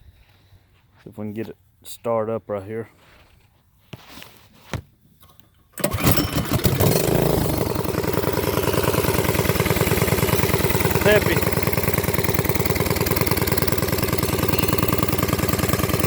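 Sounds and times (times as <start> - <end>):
small engine starting and idling: 5.6 - 16.0.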